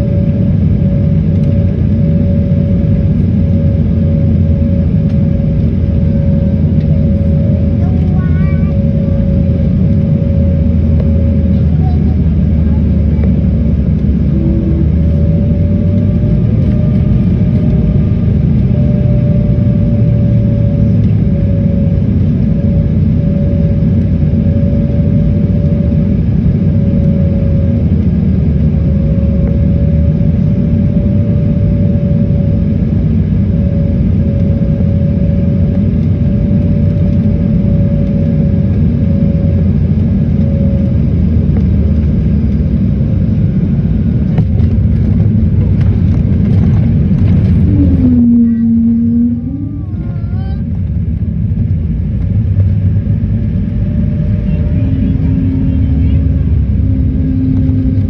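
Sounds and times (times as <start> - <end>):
jet engines rumbling: 0.0 - 58.0
wavering moaning tone: 2.2 - 27.8, 47.2 - 51.1, 53.1 - 58.0.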